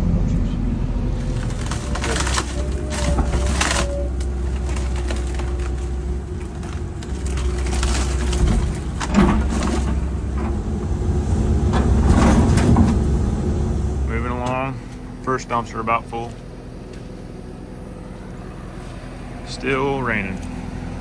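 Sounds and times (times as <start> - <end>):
excavator diesel engine running: 0.0 - 21.0
hydraulic whine: 0.0 - 21.0
debris knocks and crunches: 1.2 - 10.6.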